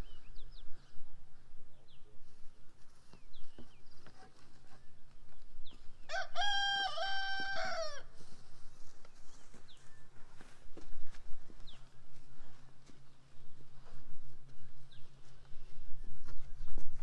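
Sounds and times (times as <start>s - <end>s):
small birds chirping: 0.0s - 6.2s, 8.7s - 17.0s
rooster crowing: 6.1s - 8.1s.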